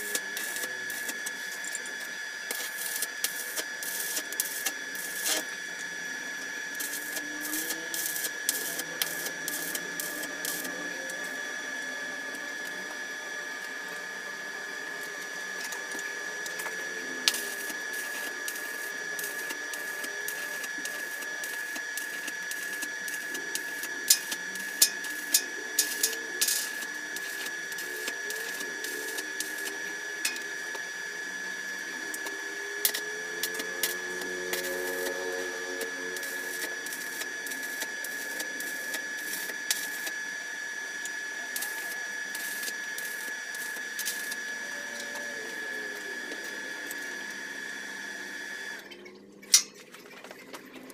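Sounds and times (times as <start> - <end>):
welding arc crackling and spitting: 0.0 - 13.0, 14.9 - 31.1, 31.7 - 40.2, 41.0 - 47.4
high-pitched whine: 0.0 - 49.7.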